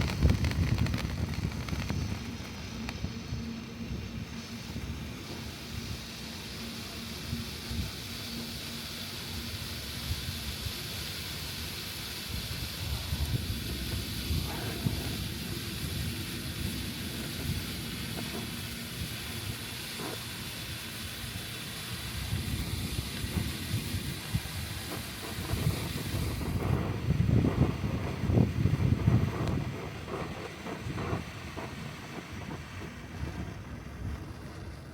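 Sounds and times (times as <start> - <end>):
wind buffeting microphone: 0.0 - 6.2, 12.2 - 20.1, 20.8 - 34.9
firework stick hissing: 0.0 - 33.4.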